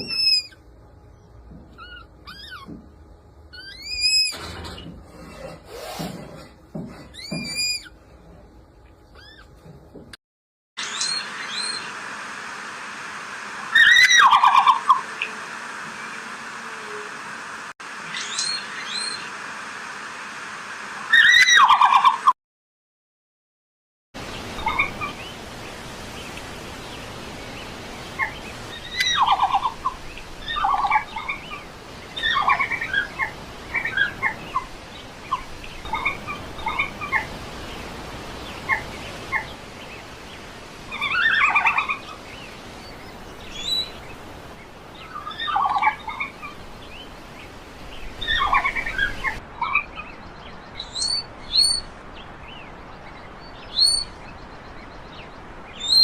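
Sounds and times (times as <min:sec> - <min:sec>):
red panda high-pitched calls: 0:00.0 - 0:00.6, 0:01.7 - 0:02.8, 0:03.5 - 0:04.4, 0:07.2 - 0:08.0, 0:09.2 - 0:09.5
steady background hiss: 0:10.8 - 0:21.2, 0:24.2 - 0:56.0.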